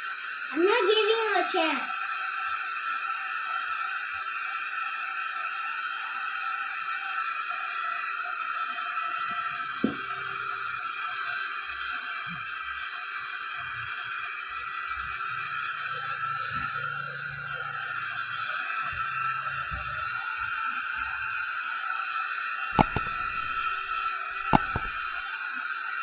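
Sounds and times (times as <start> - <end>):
sharp click: 22.8 - 25.2.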